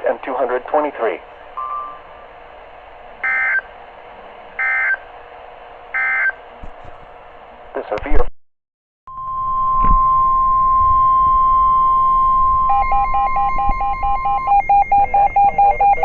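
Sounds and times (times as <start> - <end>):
rapid two-pitch beeping: 3.2 - 3.7, 4.6 - 5.0, 9.1 - 16.0
steady loud alarm tone: 3.2 - 3.7, 4.6 - 5.0, 6.0 - 6.4, 9.1 - 16.0.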